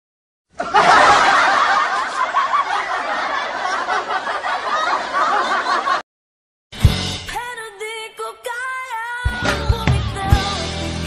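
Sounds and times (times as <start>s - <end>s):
crowd laughing: 0.5s - 6.1s.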